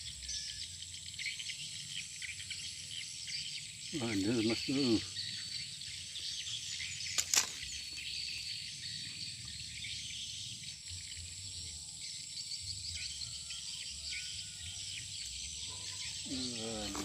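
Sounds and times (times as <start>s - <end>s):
insect chorus: 0.0s - 17.0s.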